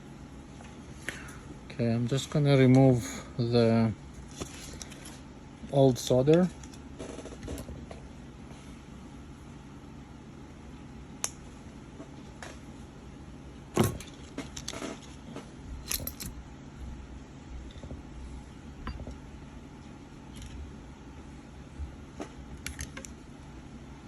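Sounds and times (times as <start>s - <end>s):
small clicks and metallic clinks: 15.9s - 16.4s.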